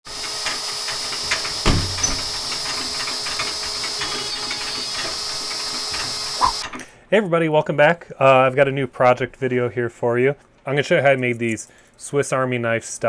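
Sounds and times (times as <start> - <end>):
machine hissing with high whine: 0.1 - 6.8
thump: 1.6 - 2.4.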